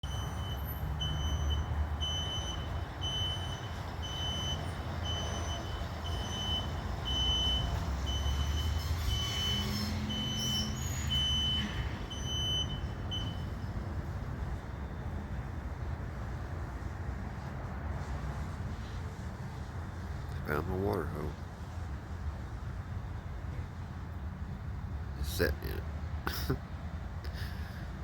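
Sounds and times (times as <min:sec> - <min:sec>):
reversing alarm beeping: 0:00.0 - 0:13.7
low engine rumble: 0:00.0 - 0:28.0.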